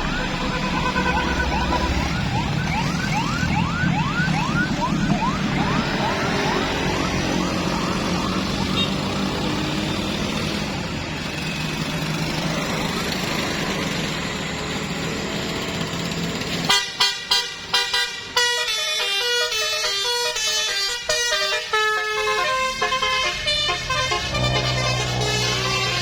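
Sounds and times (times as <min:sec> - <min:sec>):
bus engine and road noise: 0:00.0 - 0:26.0
musical bus horn tune: 0:00.4 - 0:02.1, 0:16.6 - 0:26.0.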